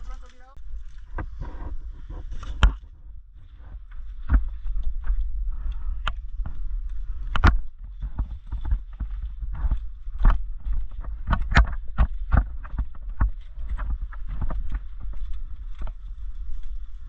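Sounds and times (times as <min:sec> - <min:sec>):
sharp knocks and clicks: 0:07.2 - 0:16.0.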